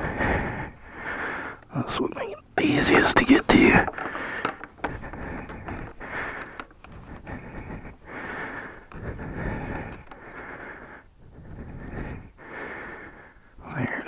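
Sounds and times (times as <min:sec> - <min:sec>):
person breathing heavily: 0:00.0 - 0:14.0
small clicks of tools handled: 0:03.8 - 0:07.0, 0:09.9 - 0:10.2.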